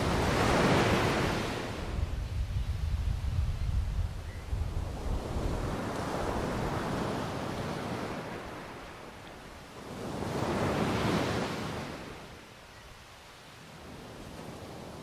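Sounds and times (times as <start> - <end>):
ocean waves breaking: 0.0 - 2.0, 5.2 - 12.4
wind rumble on microphone: 0.0 - 9.0.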